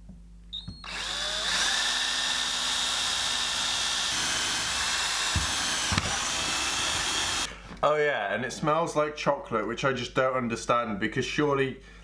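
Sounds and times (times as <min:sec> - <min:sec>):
power drill whining: 0:00.7 - 0:07.6.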